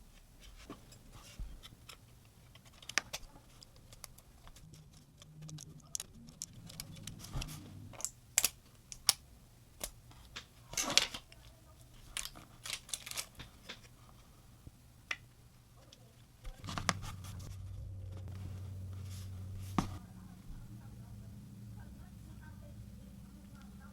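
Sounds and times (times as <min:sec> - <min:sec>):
low hum: 0:16.4 - 0:23.9
scratch: 0:16.6 - 0:20.0.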